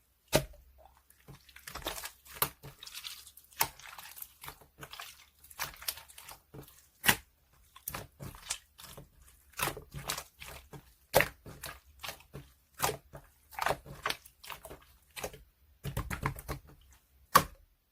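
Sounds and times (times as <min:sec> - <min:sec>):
slime crackling and squishing: 0:00.1 - 0:17.9.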